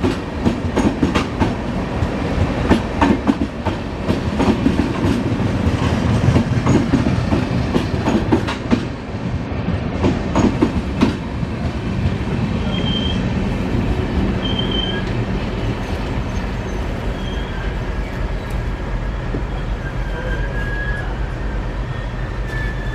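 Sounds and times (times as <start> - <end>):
train wheels clattering over rail joints: 0.0 - 9.0, 9.9 - 12.4
train low rumble: 0.0 - 22.9
thin brake squeals: 14.4 - 15.1, 16.3 - 18.5, 19.4 - 22.9.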